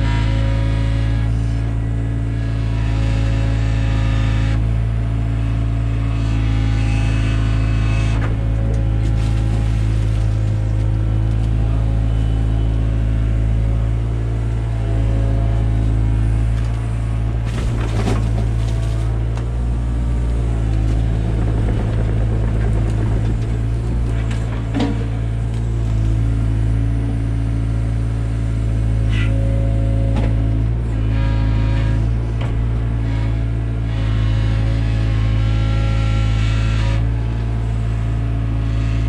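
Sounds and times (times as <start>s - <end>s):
excavator diesel engine running: 0.0s - 39.0s
knocks and scrapes: 17.4s - 26.0s.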